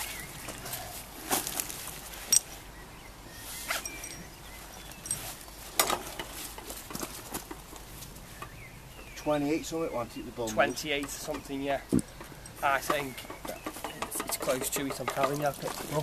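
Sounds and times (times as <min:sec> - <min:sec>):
gear rustling: 0:03.6 - 0:08.1
sharp clicks and ticks: 0:10.9 - 0:16.0.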